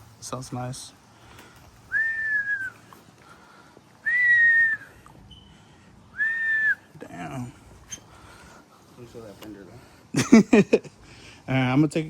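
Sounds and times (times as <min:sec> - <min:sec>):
high whistle-like notes: 0:01.9 - 0:03.0, 0:04.0 - 0:05.5.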